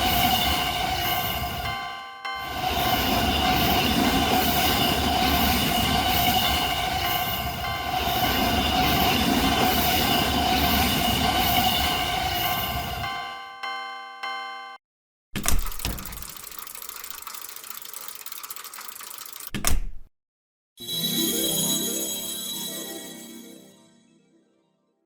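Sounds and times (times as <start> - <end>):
train wheels rumbling: 0.0 - 13.1
crossing warning bell ringing: 0.0 - 14.8.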